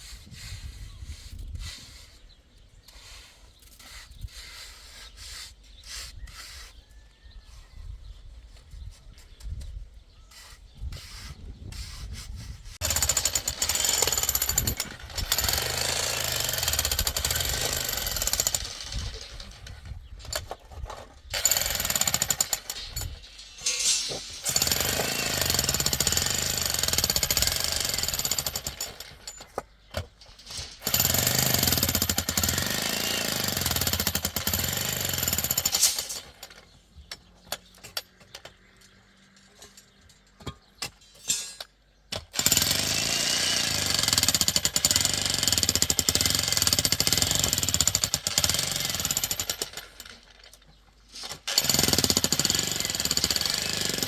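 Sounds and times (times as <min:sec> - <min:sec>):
hammer drill chiselling masonry: 0:12.8 - 0:38.5, 0:41.6 - 0:54.0.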